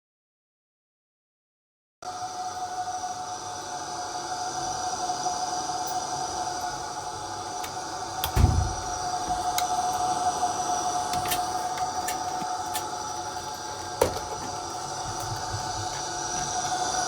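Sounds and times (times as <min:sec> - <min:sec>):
ventilation fan whining: 0:02.1 - 0:17.0
dull thump: 0:08.3 - 0:09.5.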